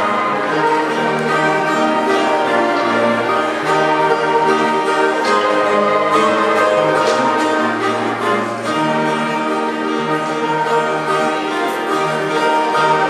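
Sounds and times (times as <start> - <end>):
orchestral sustained strings: 0.0 - 13.0.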